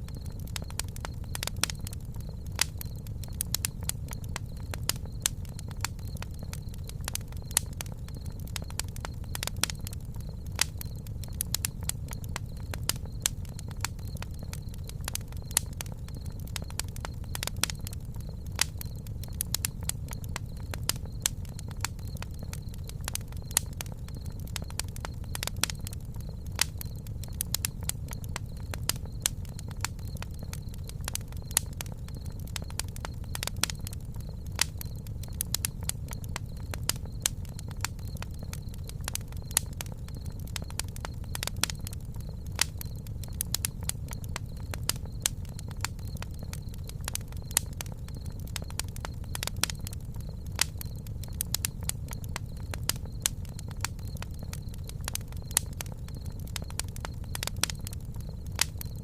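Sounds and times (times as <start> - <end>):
campfire crackling and popping: 0.0 - 59.0
low rumble of flames: 0.0 - 59.0.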